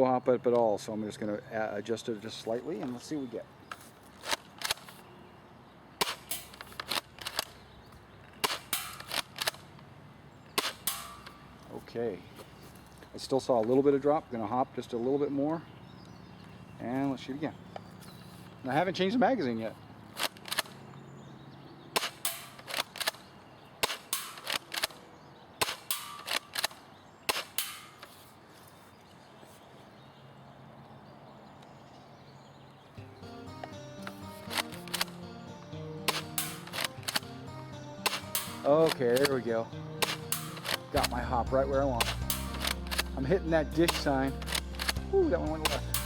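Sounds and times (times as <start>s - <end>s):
airsoft shotgun clacks: 3.7s - 5.0s, 6.0s - 7.6s, 8.4s - 9.8s, 10.6s - 11.4s, 20.1s - 20.8s, 22.0s - 25.0s, 25.6s - 28.2s, 34.0s - 35.2s, 36.1s - 37.4s, 38.1s - 41.3s, 41.9s - 46.0s.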